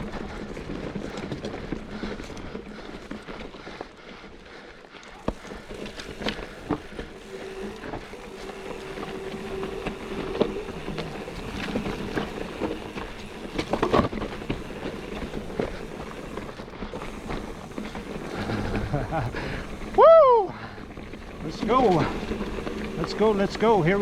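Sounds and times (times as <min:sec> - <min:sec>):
tyres on gravel: 0:00.0 - 0:24.0.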